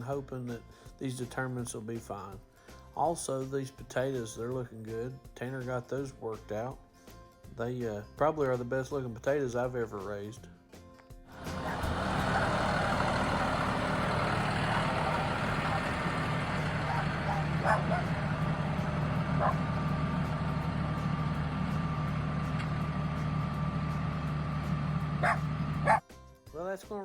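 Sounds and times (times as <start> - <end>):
engine running steadily: 11.3 - 26.0.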